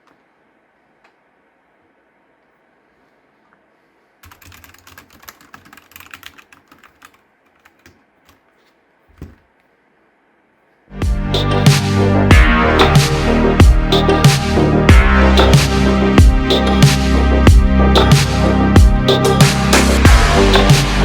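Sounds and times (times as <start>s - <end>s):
loud electronic music: 10.9s - 21.0s.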